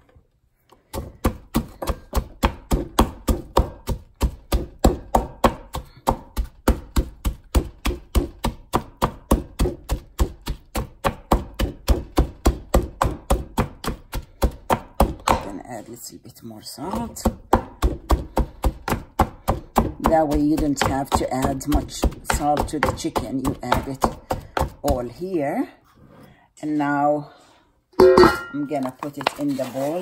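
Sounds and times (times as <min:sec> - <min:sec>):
garlic being smashed: 0:00.9 - 0:15.6, 0:16.8 - 0:25.0.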